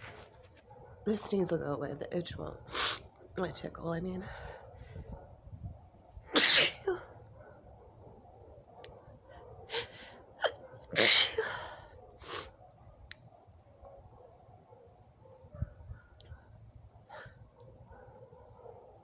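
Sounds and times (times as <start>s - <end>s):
woman sneezing loudly: 6.4s - 7.1s, 9.8s - 11.7s.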